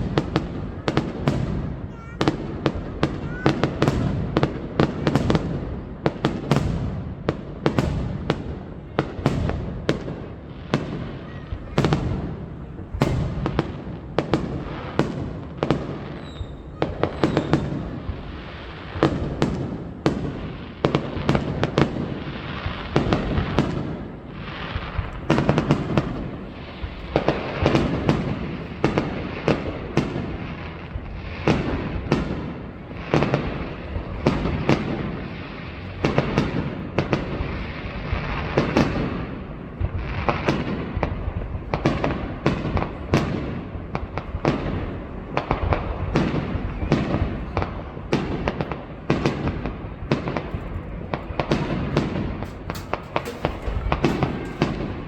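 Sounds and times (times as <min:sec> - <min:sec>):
crackling hiss of firework stars: 0:00.0 - 0:55.0
fireworks shells bursting: 0:50.4 - 0:55.0.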